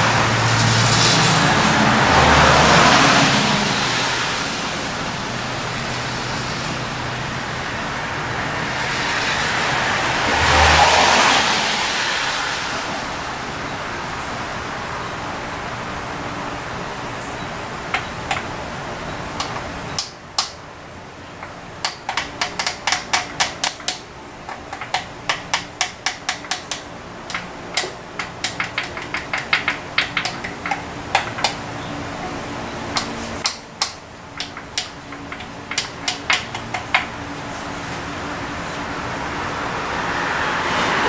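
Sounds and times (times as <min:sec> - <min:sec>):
sharp irregular clicks and taps: 0:17.9 - 0:18.7, 0:19.3 - 0:20.6, 0:21.4 - 0:31.8, 0:32.9 - 0:37.2.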